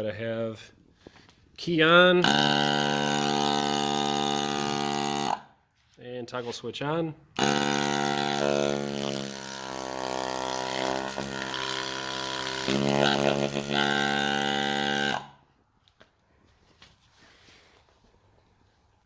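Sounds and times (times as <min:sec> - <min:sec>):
electric air compressor humming: 0:02.2 - 0:05.4, 0:07.4 - 0:15.4.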